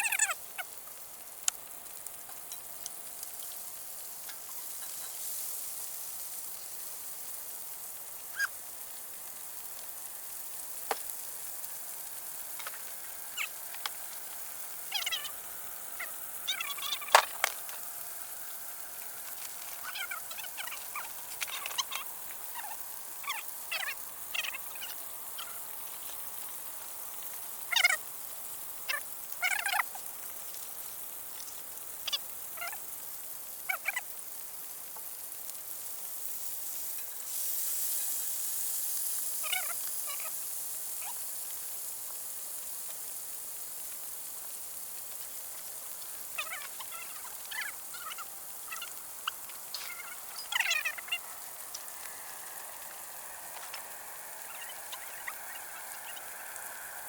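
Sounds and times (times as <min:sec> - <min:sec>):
small animals chirping: 0:00.0 - 0:00.8, 0:08.3 - 0:08.6, 0:12.6 - 0:18.7, 0:19.6 - 0:25.8, 0:27.5 - 0:28.1, 0:28.8 - 0:29.9, 0:32.0 - 0:32.9, 0:33.6 - 0:34.1, 0:39.4 - 0:40.4, 0:41.0 - 0:41.2, 0:46.2 - 0:56.9
steady high hiss: 0:00.0 - 0:57.0.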